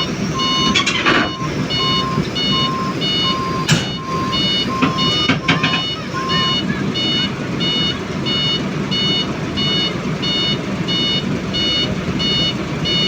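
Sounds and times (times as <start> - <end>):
sharp noises: 0.0 - 6.7
diesel engine running: 0.0 - 13.0
reversing alarm beeping: 0.0 - 13.0.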